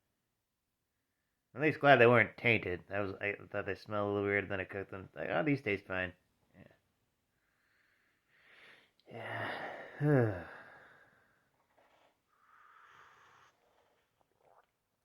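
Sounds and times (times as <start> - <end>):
man speaking: 1.6 - 6.2
man exhaling and sighing: 8.5 - 11.4.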